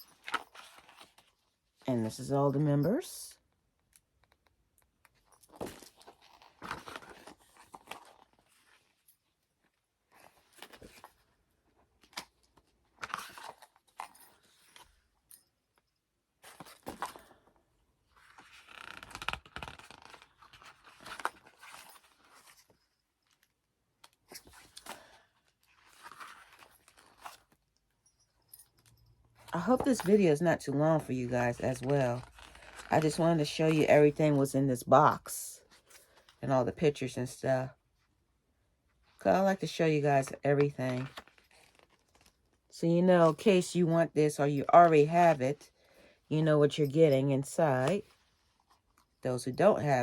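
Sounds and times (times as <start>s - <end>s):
book pages turning: 5.6s - 8.9s, 18.1s - 22.6s, 24.1s - 27.6s, 29.5s - 34.4s, 40.2s - 42.6s.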